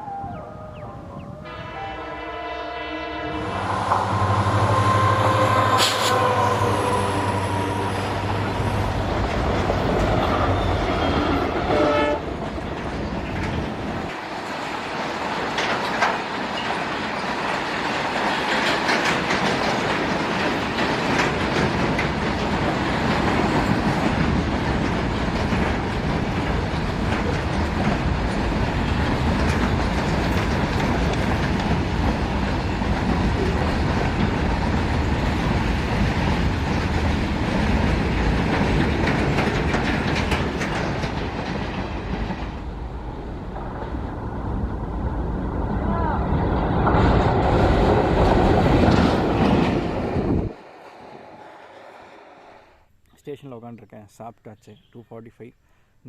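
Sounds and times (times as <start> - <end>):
train horn: 0.0 - 9.0, 10.5 - 12.4
train rolling rumble: 0.0 - 53.0
wheels clattering over rail joints: 7.3 - 51.6.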